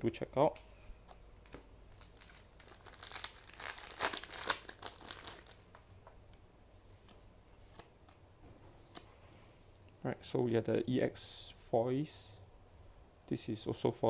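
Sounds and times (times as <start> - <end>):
foil wrapper crinkling and tearing: 1.9 - 5.9.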